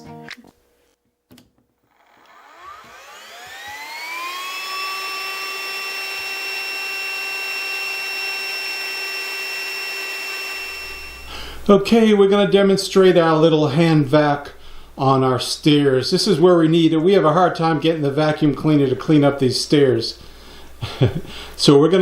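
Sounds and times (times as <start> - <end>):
handheld vacuum motor whine: 1.8 - 11.5.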